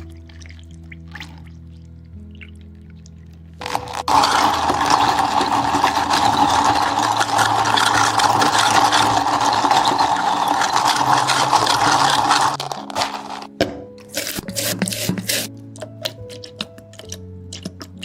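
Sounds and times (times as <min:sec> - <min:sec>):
soft background music: 0:00.0 - 0:18.0
cafe drink machine running: 0:03.6 - 0:13.5.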